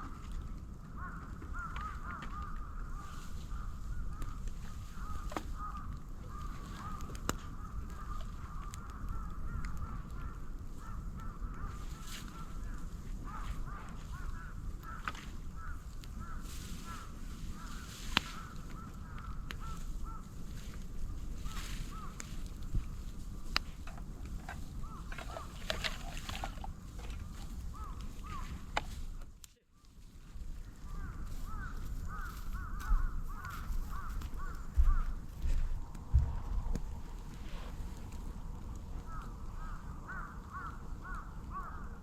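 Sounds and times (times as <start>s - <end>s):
low rumble of fire: 0.0s - 25.8s, 26.6s - 42.0s
bamboo whistling in fire: 2.8s - 25.6s
sharp cracks and pops: 4.0s - 30.1s.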